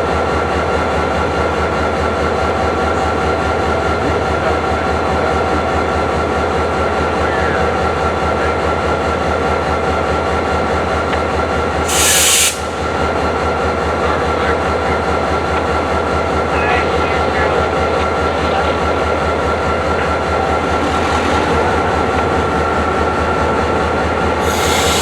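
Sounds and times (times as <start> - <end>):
freight train wheels on rails: 0.0 - 25.0
hiss burst: 11.9 - 12.8, 24.4 - 25.0.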